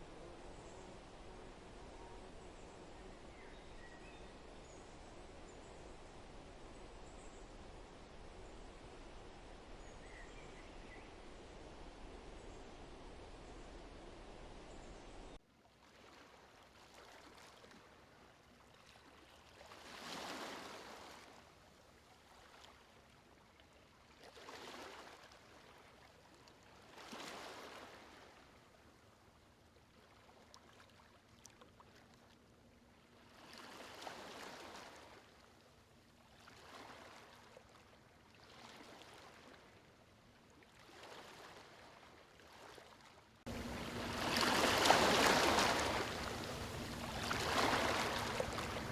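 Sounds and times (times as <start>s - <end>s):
faint waves washing in: 36.3s - 48.9s.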